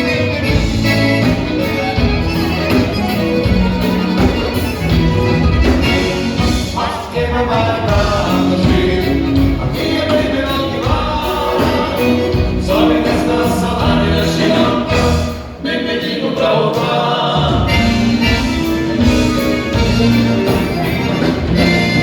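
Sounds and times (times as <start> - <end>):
band playing: 0.0 - 22.0
voices singing together: 5.7 - 22.0.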